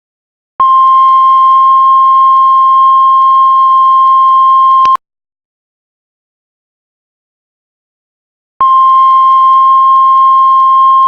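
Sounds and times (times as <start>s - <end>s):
heart monitor flatline tone: 0.6s - 5.0s, 8.6s - 11.0s.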